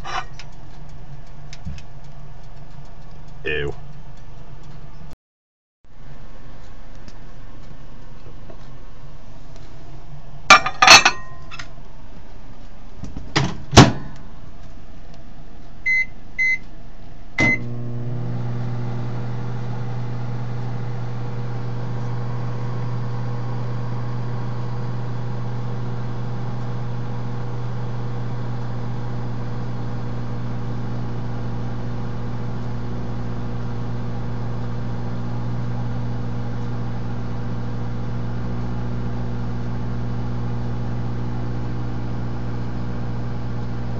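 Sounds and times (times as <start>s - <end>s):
microwave oven humming: 15.3s - 43.9s
short keypad beeps: 15.9s - 16.6s, 17.4s - 17.6s.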